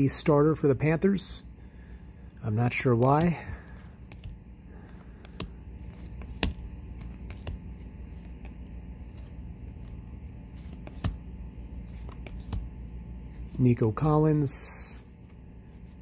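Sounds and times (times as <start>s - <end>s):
cards clicking: 2.7s - 13.6s
cards being flipped through: 2.7s - 14.0s.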